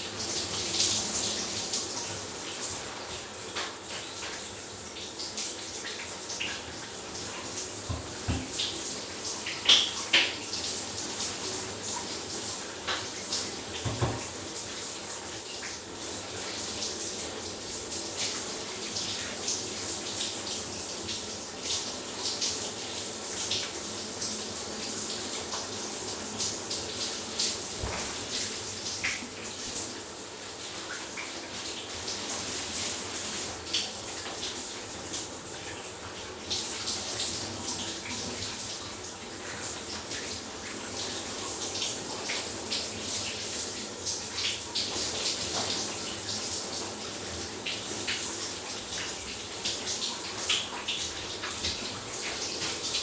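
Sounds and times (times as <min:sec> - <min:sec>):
shower water spraying: 0:00.0 - 0:53.0
dull knocks: 0:13.8 - 0:14.3.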